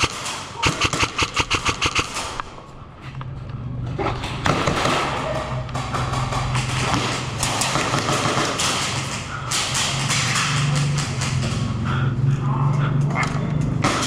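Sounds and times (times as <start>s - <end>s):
sharp clicks: 0.0s - 2.6s
steady low hum: 0.0s - 4.5s, 5.2s - 14.0s
taps and knocks: 4.8s - 9.0s.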